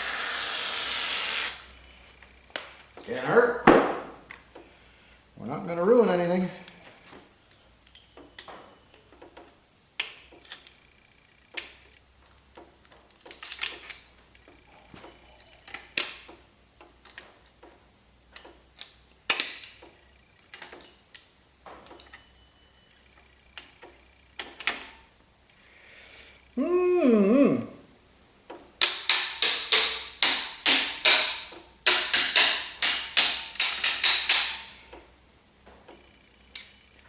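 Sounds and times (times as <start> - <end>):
metal tools clicking and tapping: 28.5 - 35.0.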